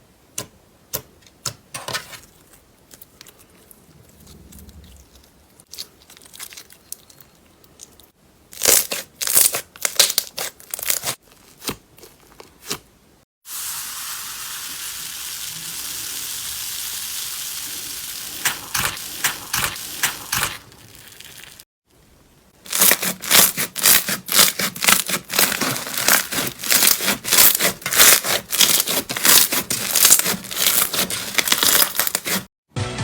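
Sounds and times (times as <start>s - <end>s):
slime crackling and popping: 22.7s - 32.4s.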